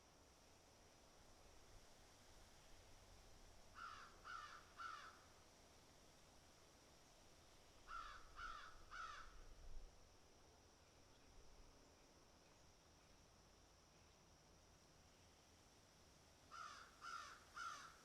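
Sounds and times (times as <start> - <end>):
crow cawing: 3.8 - 5.2, 7.9 - 9.3, 16.5 - 18.0.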